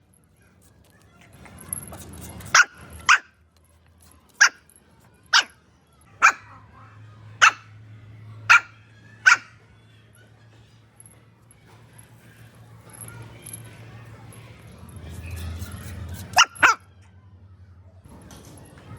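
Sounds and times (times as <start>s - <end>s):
dog barking: 2.5s - 3.4s, 4.4s - 4.6s, 5.3s - 6.7s, 7.4s - 7.7s, 8.4s - 9.6s, 16.2s - 16.8s.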